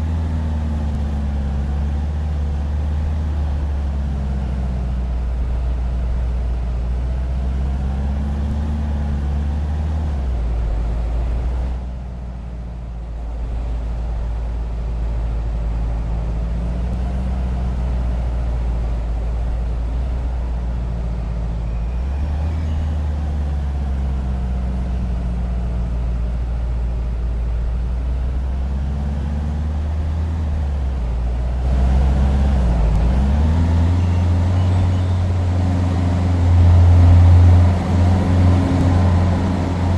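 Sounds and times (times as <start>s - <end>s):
vehicle motor droning: 0.0s - 39.9s.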